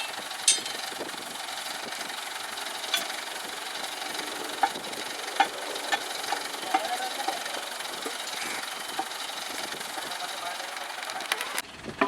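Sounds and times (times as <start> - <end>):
crane engine running: 0.0 - 12.0
sharp high-pitched clinks: 0.5 - 0.8.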